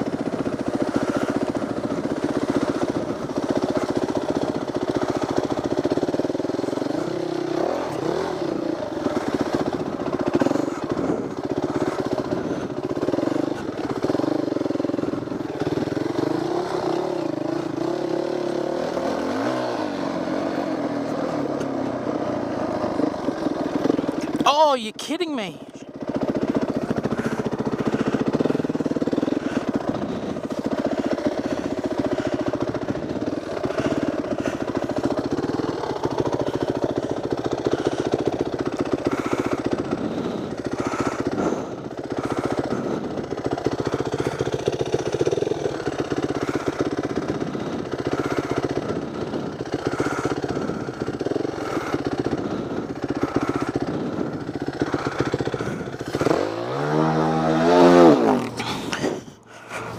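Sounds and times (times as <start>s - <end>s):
dirt bike engine running: 0.0s - 59.9s.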